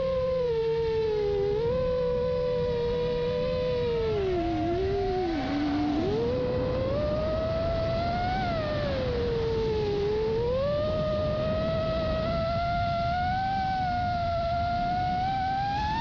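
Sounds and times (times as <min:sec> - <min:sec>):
drone motors whining: 0:00.0 - 0:16.0
wind and propeller wash: 0:00.0 - 0:16.0.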